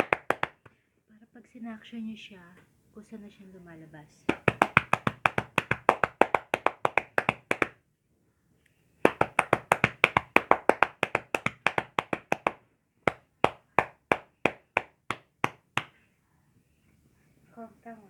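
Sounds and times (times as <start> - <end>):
hand slaps on back: 0.0 - 0.8, 4.3 - 7.8, 9.0 - 16.0.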